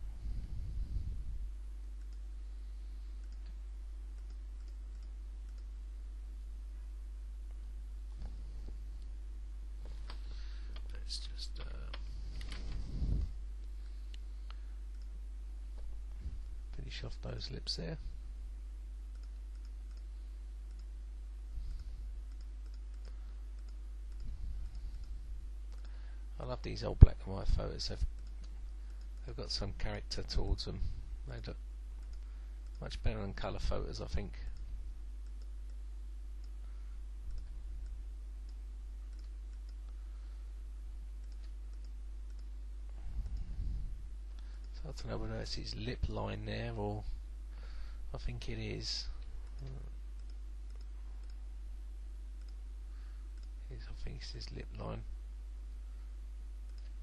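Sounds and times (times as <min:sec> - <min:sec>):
low electrical hum: 0:00.0 - 0:57.0
soft low rumbles: 0:00.0 - 0:57.0
computer mouse clicks: 0:03.2 - 0:05.7, 0:19.1 - 0:20.1, 0:21.6 - 0:26.0, 0:37.3 - 0:40.0, 0:41.2 - 0:42.5, 0:56.7 - 0:57.0.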